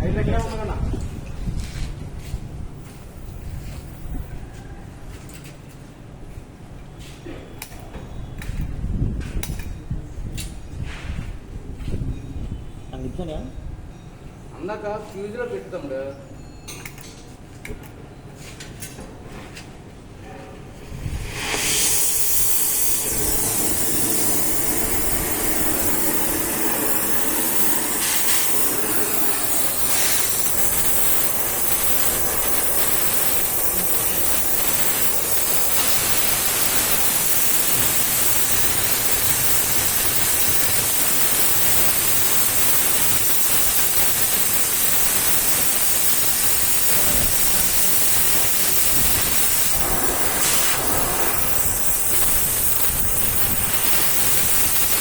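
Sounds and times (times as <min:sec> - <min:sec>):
gas cutting torch hissing: 0:20.8 - 0:55.0.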